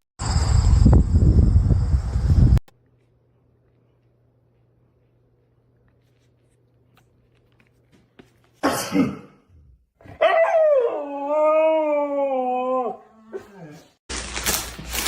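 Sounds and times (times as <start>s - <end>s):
dog howling: 10.1s - 14.0s.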